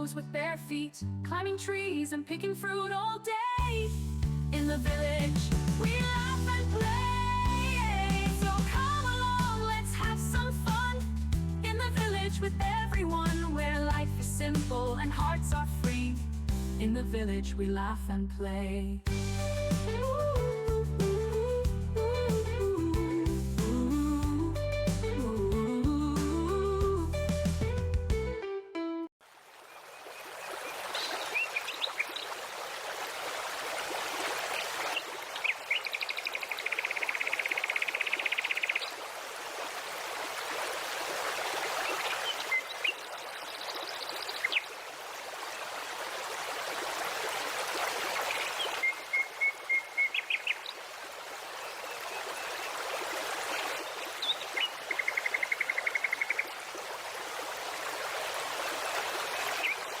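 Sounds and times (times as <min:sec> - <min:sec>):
stream flowing: 0:29.2 - 1:00.0
songbirds singing: 0:29.7 - 0:32.4, 0:34.5 - 0:39.1, 0:41.8 - 0:44.8, 0:48.2 - 0:50.8, 0:53.5 - 0:56.6, 0:58.6 - 1:00.0.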